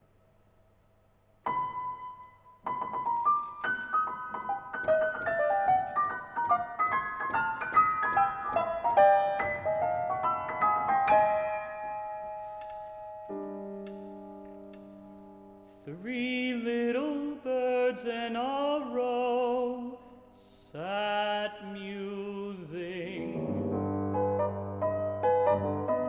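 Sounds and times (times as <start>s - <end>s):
solo piano: 1.4s - 15.7s, 23.0s - 26.0s.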